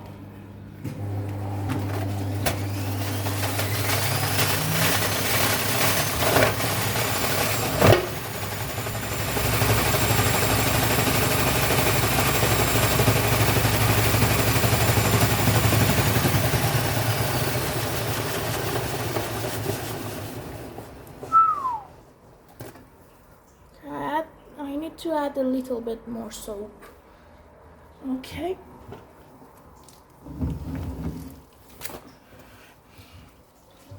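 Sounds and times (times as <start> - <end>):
washing machine motor whine: 0.8 - 21.8.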